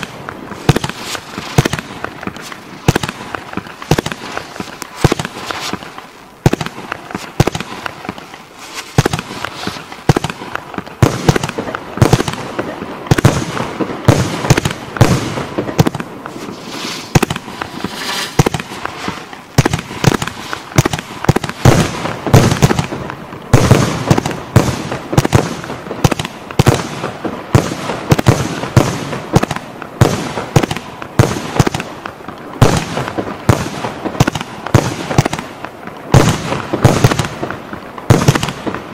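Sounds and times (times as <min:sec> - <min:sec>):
firework battery firing: 0:00.0 - 0:38.9.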